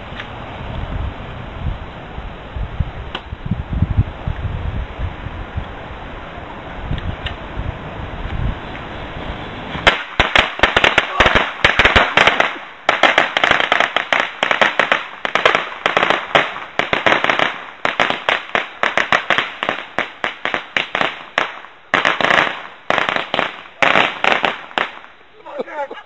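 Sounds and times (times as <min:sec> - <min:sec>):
firecrackers cracking: 0:09.7 - 0:25.3.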